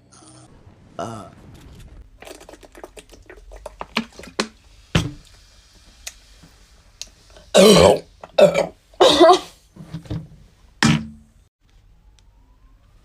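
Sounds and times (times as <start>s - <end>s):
loud thump: 5.0s - 5.2s, 10.8s - 11.2s.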